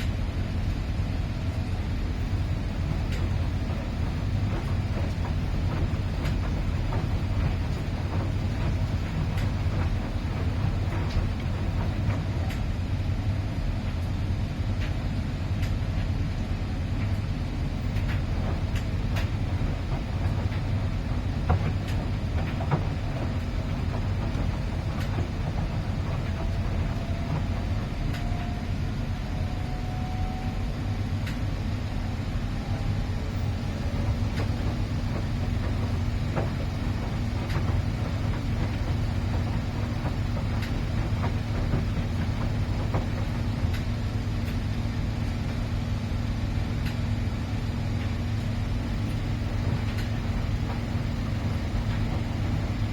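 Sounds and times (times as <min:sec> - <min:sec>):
steady hum: 0:00.0 - 0:29.8
washing machine rumble: 0:00.0 - 0:52.9.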